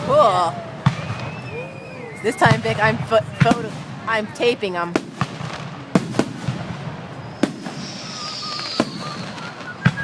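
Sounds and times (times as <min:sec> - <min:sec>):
firework bangs: 0:00.7 - 0:01.6, 0:02.3 - 0:10.0
thin wavering whistle: 0:01.0 - 0:02.4, 0:07.2 - 0:10.0
firework hissing: 0:05.1 - 0:10.0.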